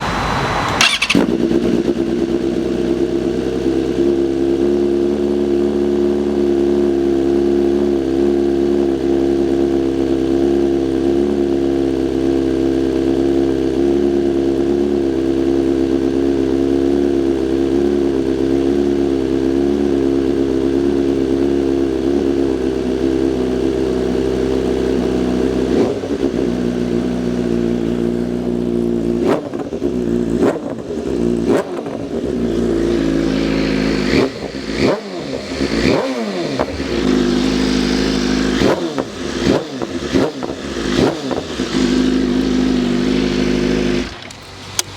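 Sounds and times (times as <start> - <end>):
engine burst: 0.0 - 2.2, 32.5 - 44.9
motorcycle engine idling: 0.6 - 44.9.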